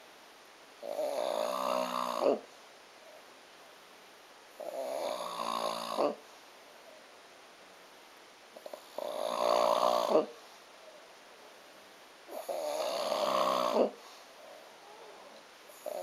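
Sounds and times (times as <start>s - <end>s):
person snoring: 0.8s - 2.4s, 4.6s - 6.2s, 8.6s - 10.4s, 12.3s - 14.0s, 15.7s - 16.0s
quiet breathing: 0.8s - 7.2s, 8.5s - 16.0s.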